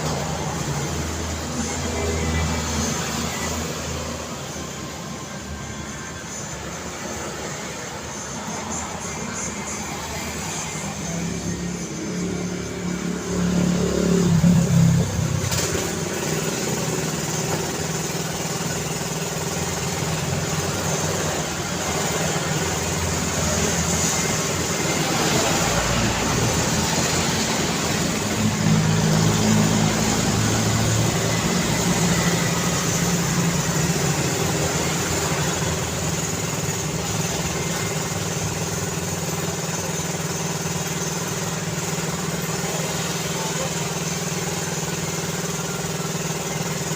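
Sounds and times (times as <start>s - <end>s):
cars passing: 0.0s - 17.7s, 20.8s - 38.3s
louder vehicle passing: 10.2s - 16.2s.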